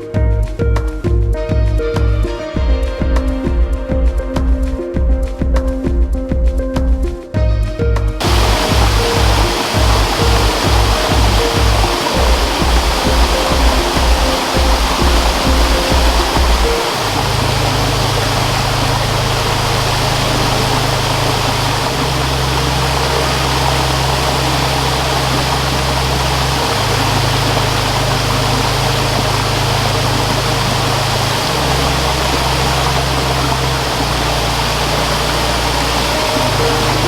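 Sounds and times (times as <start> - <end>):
low droning tone: 0.0 - 37.0
stream water rushing: 8.2 - 37.0.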